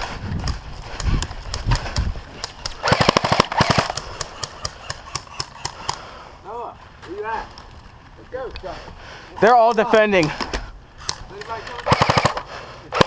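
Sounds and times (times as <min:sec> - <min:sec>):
toy gun full-auto burst: 0:02.8 - 0:06.0, 0:11.8 - 0:13.0.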